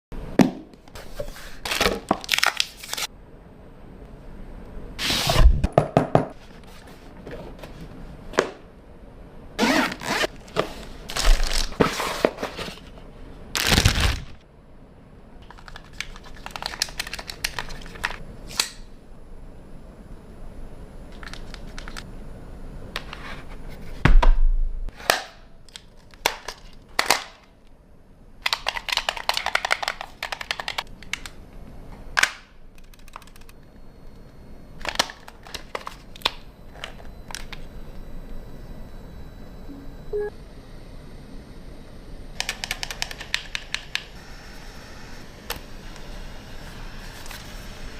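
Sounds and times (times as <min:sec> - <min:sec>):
cardboard and plastic crinkling: 0:10.4 - 0:12.9.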